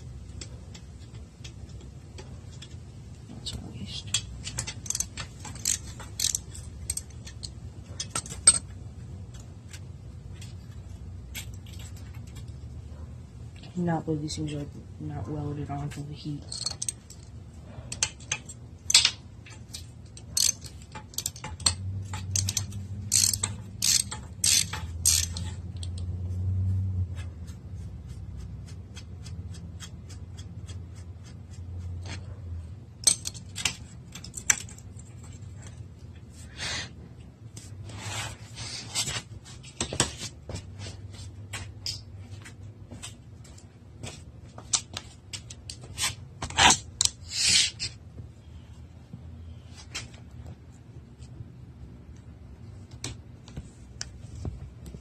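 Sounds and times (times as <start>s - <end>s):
socket ratchet clicking: 4.2s - 8.7s, 17.9s - 26.1s.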